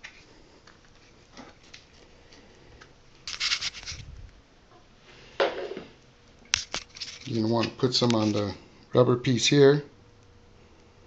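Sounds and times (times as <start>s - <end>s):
scraping rustle: 3.2s - 4.2s, 6.6s - 8.6s.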